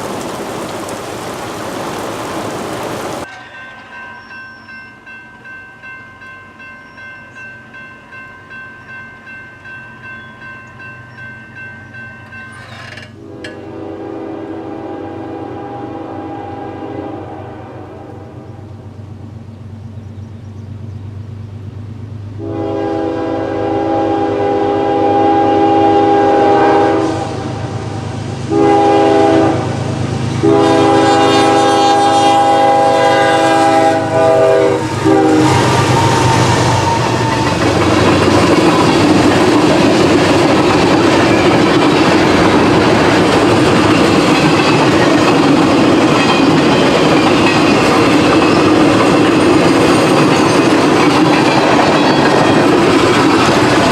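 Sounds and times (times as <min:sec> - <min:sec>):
train rumble: 0:00.0 - 0:53.9
wheels clicking over rail joints: 0:12.1 - 0:13.7, 0:36.9 - 0:53.9
locomotive air horn blasts: 0:13.2 - 0:18.5, 0:22.4 - 0:29.8, 0:30.4 - 0:37.7.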